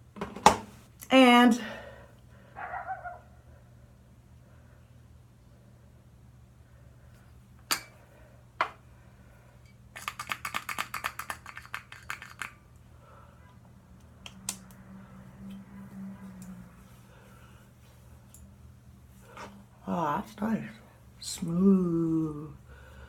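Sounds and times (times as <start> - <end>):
cosmetic containers clicking: 10.0 - 12.6.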